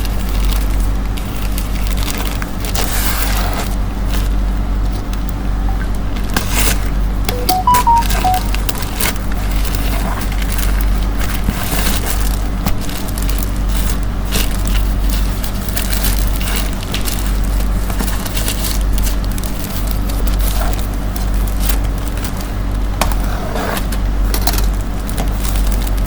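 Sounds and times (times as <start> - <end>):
packaging crinkling and rustling: 10.6 - 20.5.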